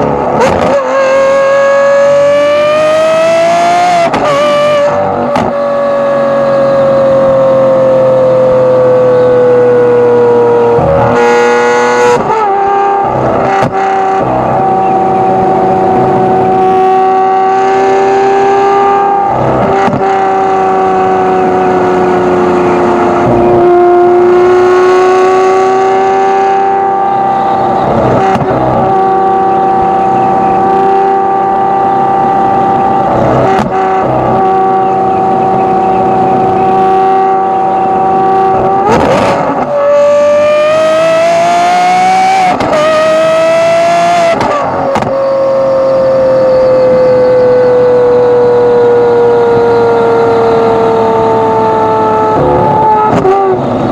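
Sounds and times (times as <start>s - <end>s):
sports car engine cruising: 0.0s - 53.9s.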